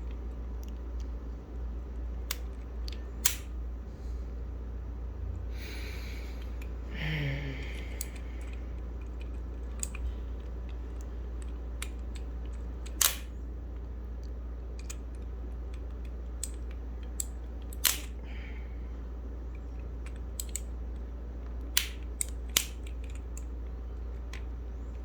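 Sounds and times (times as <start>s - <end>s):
steady low hum: 0.0s - 25.0s
plastic clicks and snaps: 2.2s - 3.5s, 7.8s - 18.2s, 19.8s - 25.0s.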